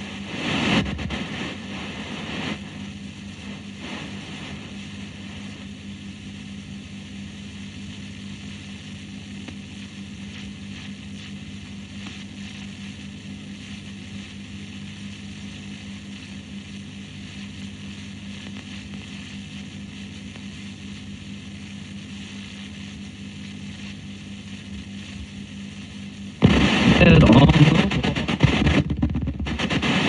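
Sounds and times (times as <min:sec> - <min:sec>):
loud burst of rough noise: 0:00.0 - 0:05.7, 0:22.8 - 0:30.0
electrical hum and hiss: 0:00.0 - 0:30.0.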